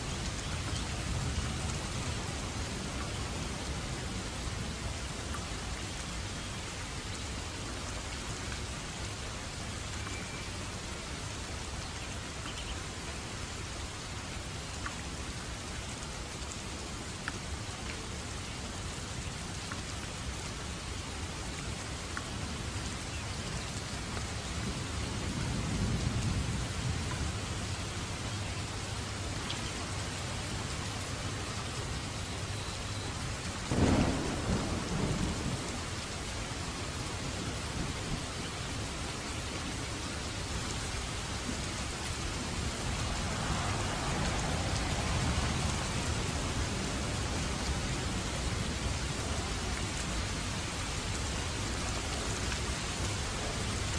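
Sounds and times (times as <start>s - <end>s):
rain drop ticks: 0.0s - 53.9s
steady rainfall: 0.0s - 53.9s
low roll of thunder: 24.6s - 27.8s, 33.7s - 38.6s, 42.5s - 49.5s.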